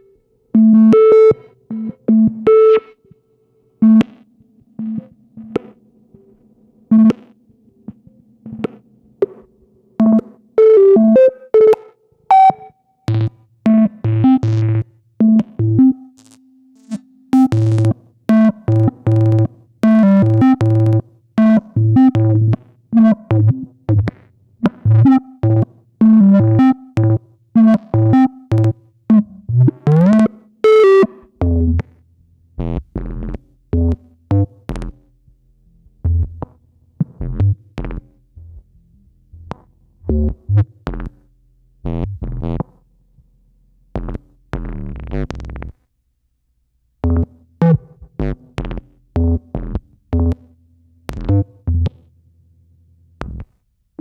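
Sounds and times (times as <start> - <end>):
synthesizer plucked notes: 0.0 - 2.9, 10.0 - 24.1, 24.7 - 31.9.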